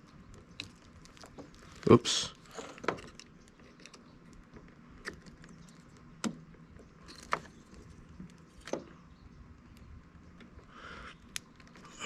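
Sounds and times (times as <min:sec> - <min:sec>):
sharp plastic clicks and knocks: 0:04.6 - 0:09.0.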